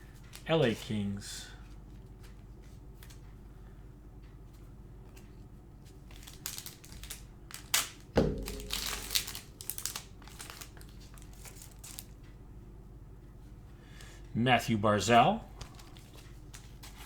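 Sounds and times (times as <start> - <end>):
foil wrapper crinkling: 6.0 - 12.2
dull thump: 8.2 - 9.2.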